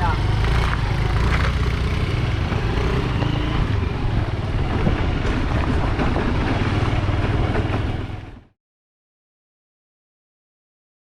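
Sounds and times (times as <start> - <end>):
motorcycle engine running: 0.0 - 8.5.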